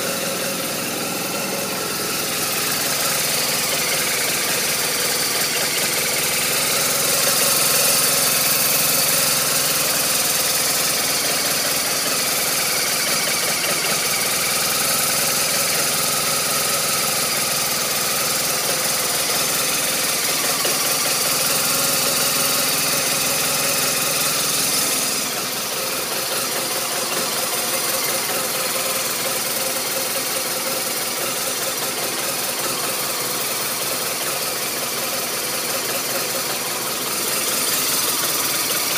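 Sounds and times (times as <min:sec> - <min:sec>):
motorcycle engine idling rough: 0:00.0 - 0:38.9.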